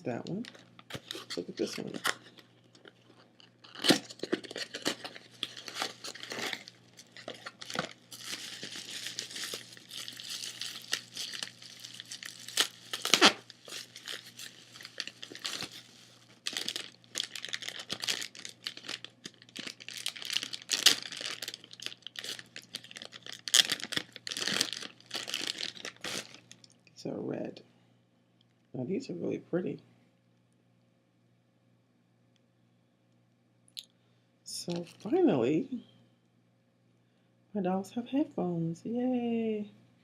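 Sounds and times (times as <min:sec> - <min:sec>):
packaging crinkling and tearing: 0:00.2 - 0:26.8.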